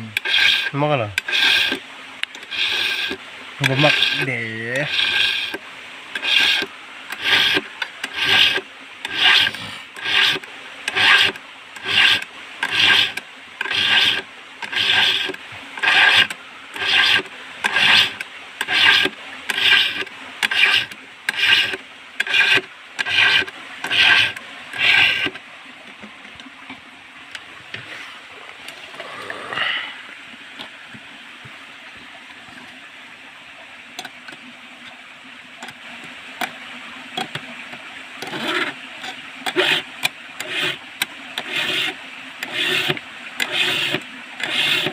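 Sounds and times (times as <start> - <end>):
short scrape: 0.2 - 1.8, 2.4 - 4.2, 4.8 - 5.6, 6.2 - 25.4
hand file rasping on saw chain: 0.2 - 5.6, 6.2 - 25.4, 38.2 - 40.8, 41.4 - 44.9.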